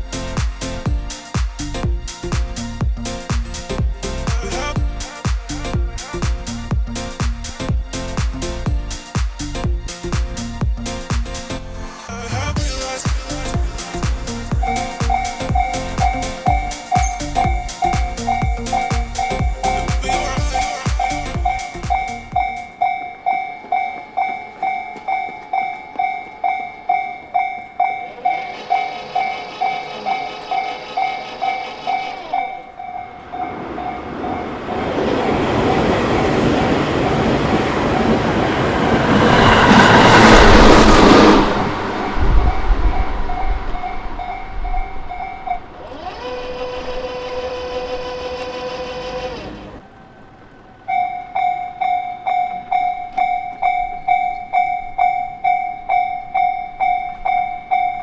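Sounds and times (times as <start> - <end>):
higher tone: 0.0 - 23.0, 37.8 - 49.8
train passing: 0.0 - 58.0
crossing warning bell: 12.7 - 40.3, 42.9 - 58.0.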